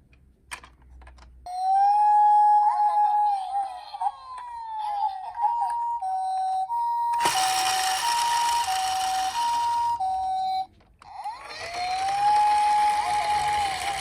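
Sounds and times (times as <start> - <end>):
toy siren two-tone pattern: 1.5 - 14.0.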